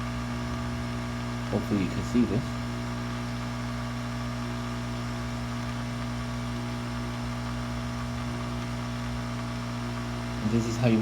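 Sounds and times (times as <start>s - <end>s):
hot air blower running: 10.2s - 11.0s.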